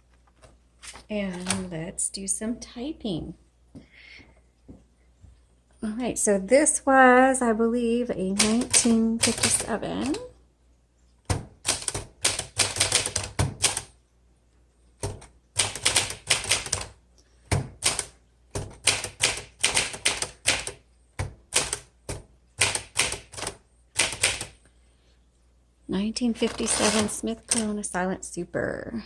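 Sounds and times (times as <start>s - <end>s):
manual typewriter typing: 8.3s - 10.3s, 11.3s - 13.9s, 15.0s - 17.0s, 17.7s - 20.8s, 21.5s - 24.6s, 26.4s - 27.7s.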